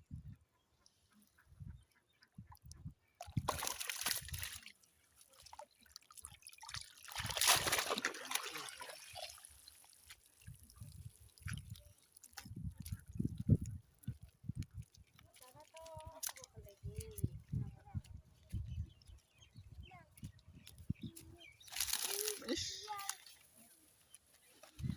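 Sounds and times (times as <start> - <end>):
water splashing and sloshing: 2.4 - 17.3, 21.6 - 24.9.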